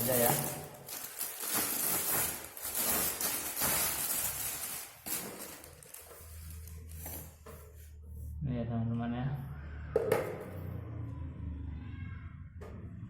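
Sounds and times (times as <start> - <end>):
plastic packaging crinkling: 0.0 - 7.4.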